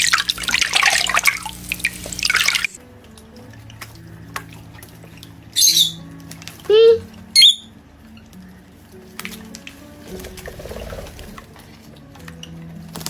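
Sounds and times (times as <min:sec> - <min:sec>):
splashing running water: 0:00.0 - 0:02.8
water dripping: 0:00.0 - 0:07.2
high-pitched chirp: 0:05.6 - 0:06.0, 0:06.7 - 0:07.7.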